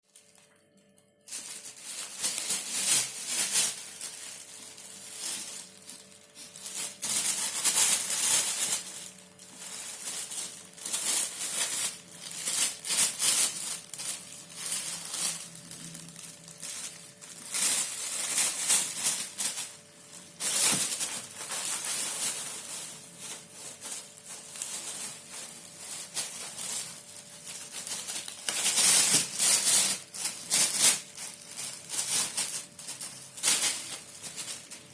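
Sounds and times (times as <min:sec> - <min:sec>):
toy rattling and crinkling: 0:01.3 - 0:34.9.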